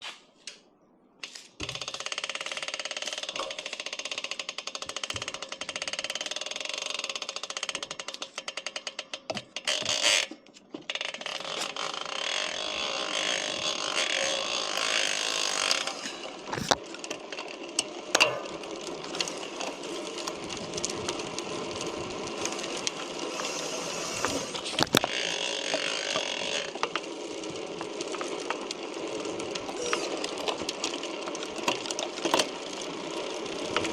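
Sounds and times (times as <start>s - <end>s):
bicycle hub ratcheting buzz: 1.6s - 33.9s
sharp snaps from hub: 14.0s - 19.8s.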